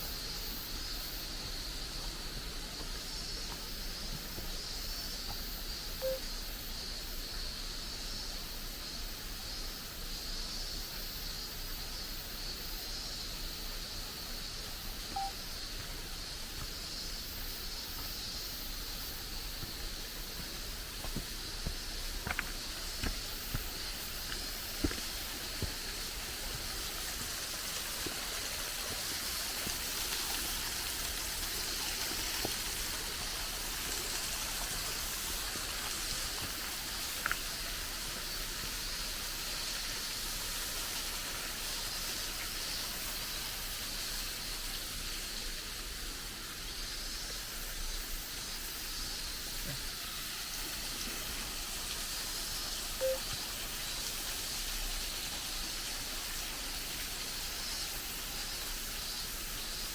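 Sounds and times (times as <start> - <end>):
running water rushing: 13.8 - 59.9.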